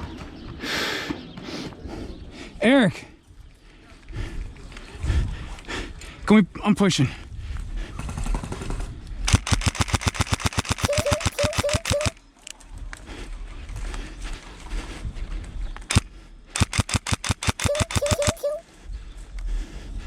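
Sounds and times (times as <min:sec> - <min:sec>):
airsoft rifle firing bursts: 0:09.3 - 0:12.1, 0:15.9 - 0:18.6.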